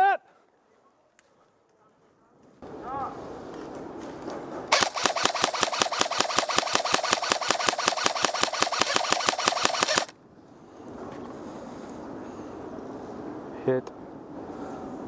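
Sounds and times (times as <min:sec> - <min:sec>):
airsoft gun full-auto burst: 0:04.7 - 0:10.1.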